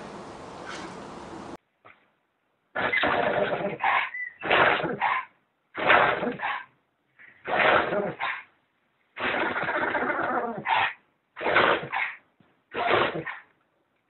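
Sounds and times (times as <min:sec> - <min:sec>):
dog sneezing: 0:12.7 - 0:13.4.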